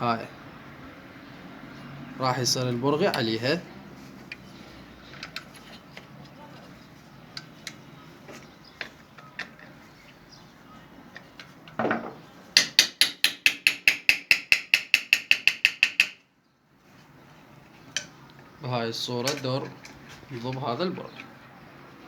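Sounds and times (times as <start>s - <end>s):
tool rustling on bolt: 2.6s - 10.5s, 19.2s - 21.4s
ratchet tool clicking: 12.6s - 16.2s.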